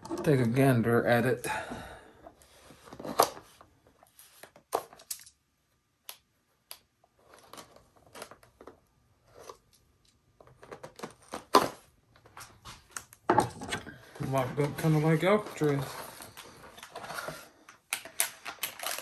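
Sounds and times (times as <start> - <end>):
packaging rustling and tearing: 14.2 - 19.0.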